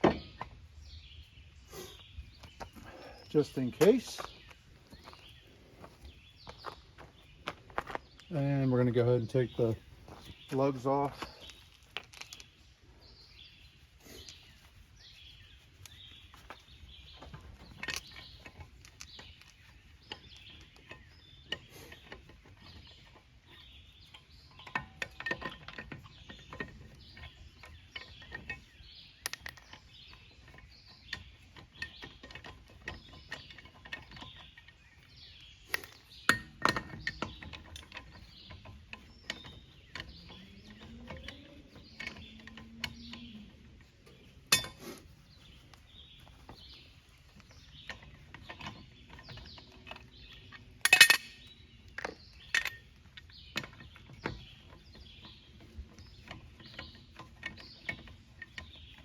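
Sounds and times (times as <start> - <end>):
lug wrench metal clinks: 44.5 - 45.0, 47.9 - 53.8.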